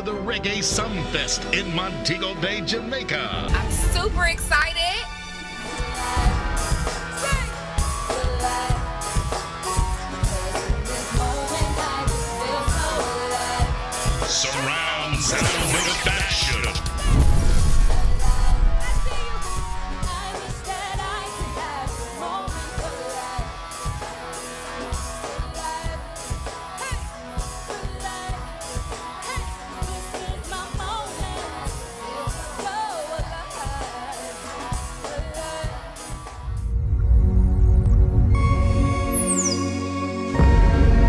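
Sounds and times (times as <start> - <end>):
person singing: 10.4 - 23.5
drum beat: 15.2 - 20.6.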